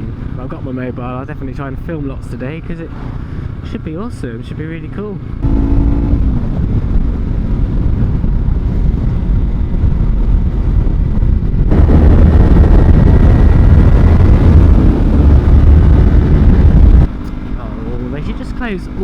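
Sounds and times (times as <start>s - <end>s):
motorcycle engine: 5.1s - 19.0s
wind rushing: 5.4s - 17.2s.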